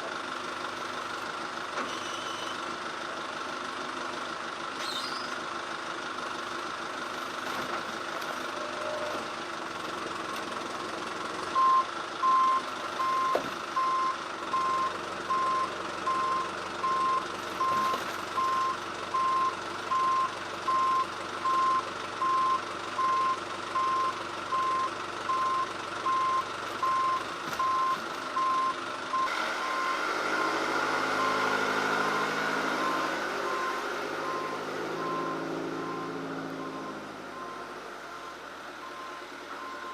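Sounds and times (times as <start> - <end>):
vehicle engine running: 0.0 - 39.9
reversing alarm beeping: 11.6 - 30.0, 31.2 - 39.9.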